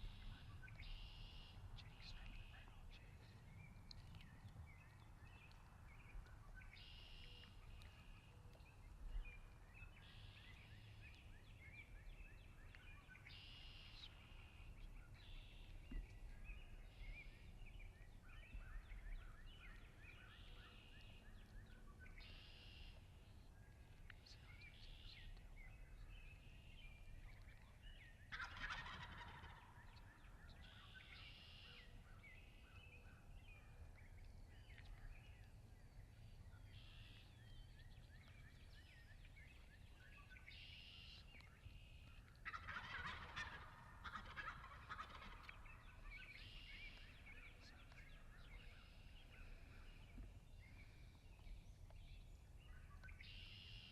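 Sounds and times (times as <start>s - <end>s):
bird calls: 23.8s - 53.9s
turkeys gobbling: 28.3s - 30.0s, 42.4s - 46.9s.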